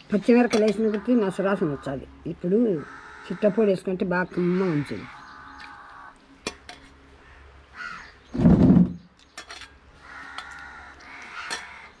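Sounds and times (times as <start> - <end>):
crow cawing: 0.6 - 6.2, 7.2 - 8.2, 10.0 - 12.0.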